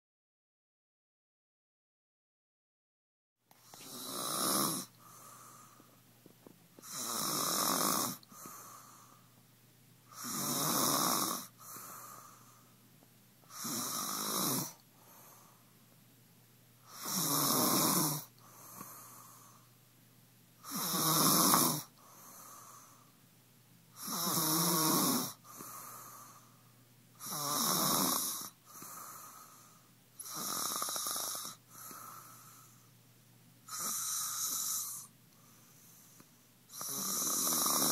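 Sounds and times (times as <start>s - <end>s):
loud snoring: 3.6s - 5.8s, 6.8s - 9.1s, 10.1s - 12.5s, 13.5s - 14.8s, 16.9s - 19.6s, 20.6s - 23.0s, 24.0s - 26.3s, 27.2s - 32.8s, 33.7s - 35.1s, 36.7s - 37.9s
quiet breath: 4.8s - 6.1s, 8.0s - 10.3s, 11.3s - 15.9s, 18.1s - 19.9s, 21.8s - 23.3s, 25.3s - 27.3s, 28.4s - 37.1s.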